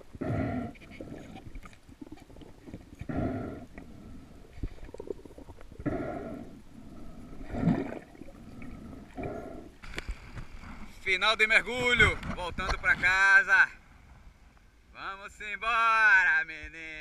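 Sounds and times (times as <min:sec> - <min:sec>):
breathing through a snorkel: 0:00.2 - 0:01.5, 0:02.3 - 0:10.9.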